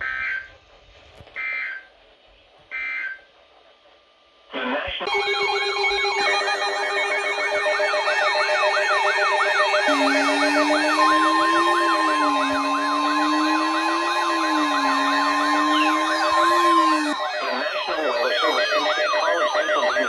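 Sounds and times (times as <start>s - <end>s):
fast yelp siren: 5.1s - 20.0s
low wavering wail siren: 5.1s - 20.0s
steady alarm tones: 5.1s - 20.0s
steady high tone: 5.1s - 20.0s.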